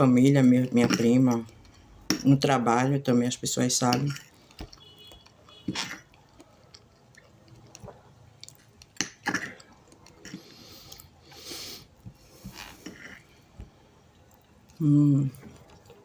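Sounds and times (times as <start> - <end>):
wet chewing and mouth smacks: 4.2 - 16.0.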